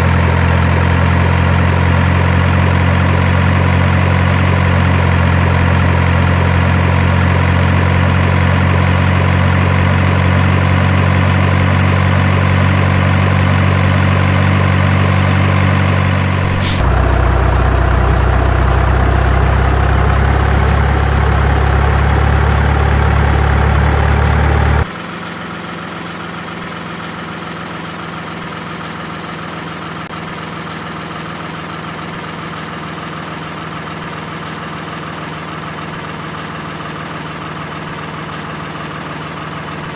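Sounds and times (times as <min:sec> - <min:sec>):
engine idling drone: 0:00.0 - 0:26.8
deeper louder hum: 0:16.2 - 0:24.9.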